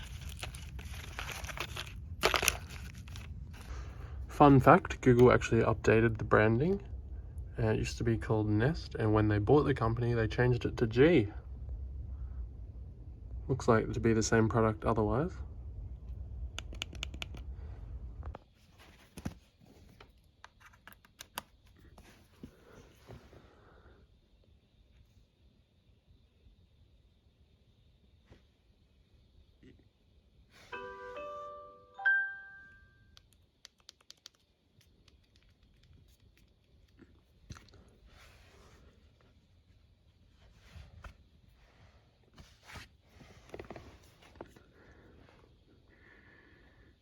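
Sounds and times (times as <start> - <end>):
low rumble: 0.0 - 16.6
light clicks and taps of handling: 19.1 - 22.1
electronic chime: 30.7 - 33.1.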